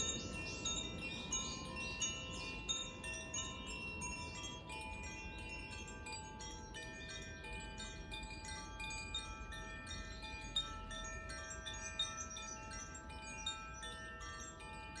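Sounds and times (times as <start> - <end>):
tuned chimes ringing: 0.0 - 15.0.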